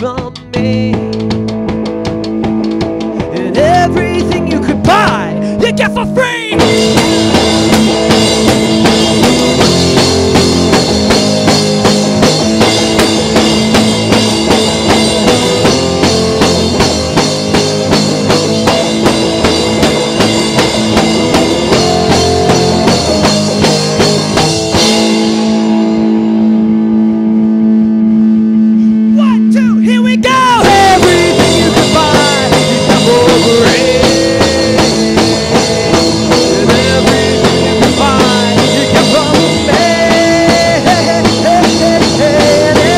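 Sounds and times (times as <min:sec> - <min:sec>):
rock band playing: 0:00.0 - 0:42.9
guitar rising slide: 0:06.5 - 0:29.6.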